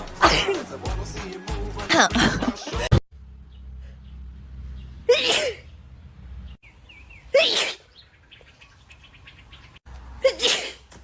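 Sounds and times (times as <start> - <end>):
woman sneezing: 5.1 - 5.6, 7.4 - 7.8, 10.2 - 10.8.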